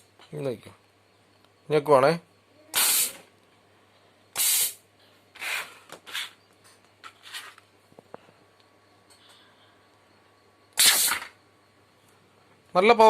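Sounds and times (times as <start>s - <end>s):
compressed air blasts hissing: 2.7s - 3.2s, 4.3s - 4.8s, 10.8s - 11.3s.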